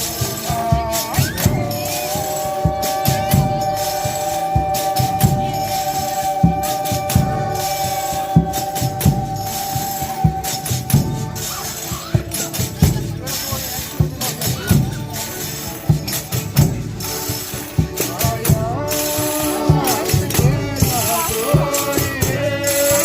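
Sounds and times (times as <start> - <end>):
drum strokes: 0.0 - 23.0
tambourine jingles: 0.0 - 23.0
long held note: 1.7 - 11.8.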